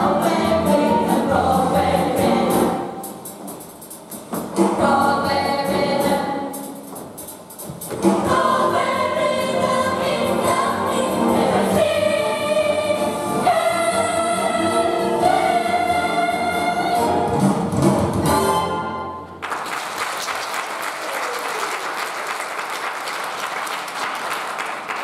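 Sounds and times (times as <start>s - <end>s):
cast singing with accompaniment: 0.0s - 3.1s, 4.6s - 6.7s, 8.0s - 17.6s.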